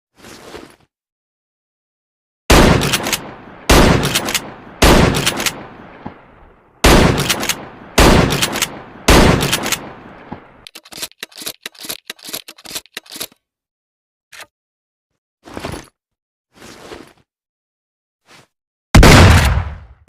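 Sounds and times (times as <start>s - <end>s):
shotgun shots: 2.5s - 6.2s, 6.8s - 10.5s, 19.0s - 20.0s
mechanical clicks: 10.6s - 13.4s.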